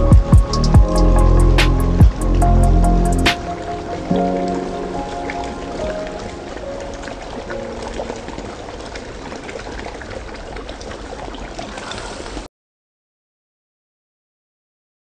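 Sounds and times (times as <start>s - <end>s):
music: 0.0s - 8.2s
water splashing down waterfall: 1.6s - 12.5s.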